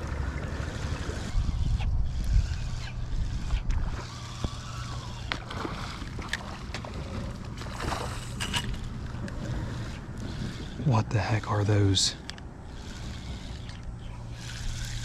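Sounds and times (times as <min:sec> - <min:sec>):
wind on microphone: 0:00.0 - 0:06.2
paddle splashing in water: 0:05.3 - 0:08.9.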